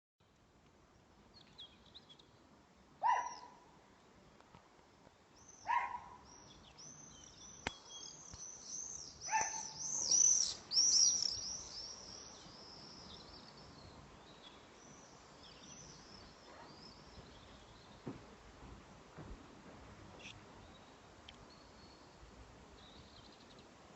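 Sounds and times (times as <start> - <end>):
faint outdoor background noise: 0.2 - 23.9
bird calls: 3.0 - 3.6, 5.4 - 18.0
rapid high twittering chirps: 6.4 - 13.8.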